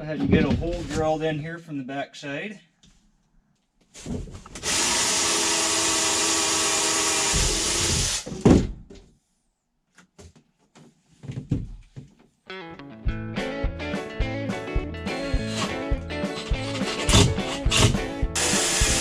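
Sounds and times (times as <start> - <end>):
power drill drilling: 4.6 - 8.3, 15.2 - 15.8, 16.4 - 19.0.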